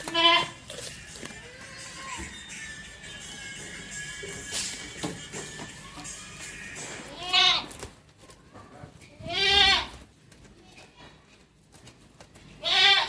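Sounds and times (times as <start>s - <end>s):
goat bleating: 0.0s - 2.4s, 7.0s - 7.9s, 9.2s - 10.1s, 12.5s - 13.0s.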